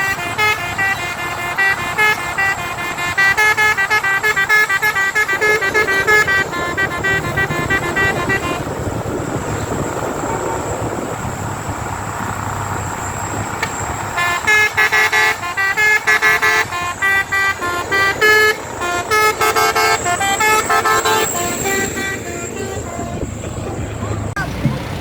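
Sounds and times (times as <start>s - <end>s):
multi-tone horn playing a tune: 0.0s - 9.3s, 14.1s - 23.8s
vehicle noise: 0.0s - 25.0s.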